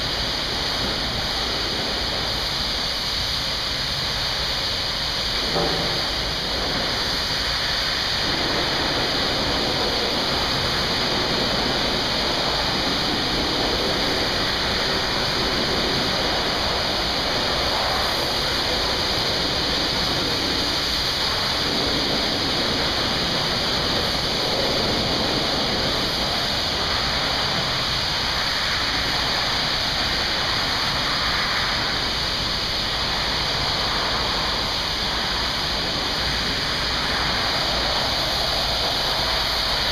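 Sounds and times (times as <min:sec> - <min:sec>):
high-pressure water spray: 0:00.0 - 0:39.9.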